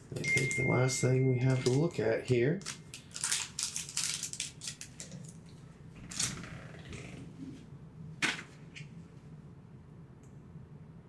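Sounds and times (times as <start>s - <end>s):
packaging rustling: 1.5s - 6.5s
packaging crinkle: 1.5s - 6.8s.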